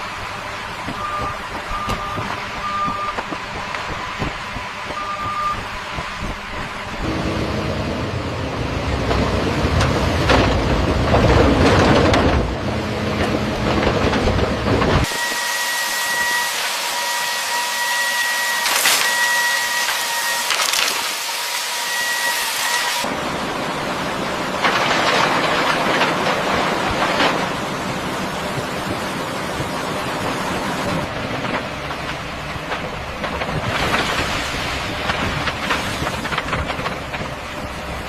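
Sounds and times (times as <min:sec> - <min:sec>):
construction machinery engine rumble: 0:00.0 - 0:15.1, 0:23.0 - 0:38.0.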